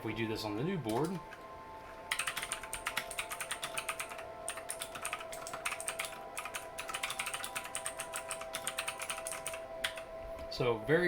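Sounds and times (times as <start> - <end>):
fast typing on mechanical keyboard: 2.1 - 10.0.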